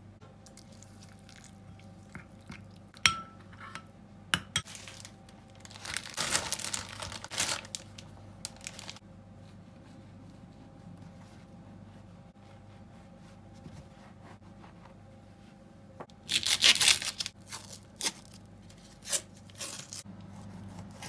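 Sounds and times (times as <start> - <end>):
plastic packaging crinkling: 4.6 - 9.0, 16.3 - 18.4.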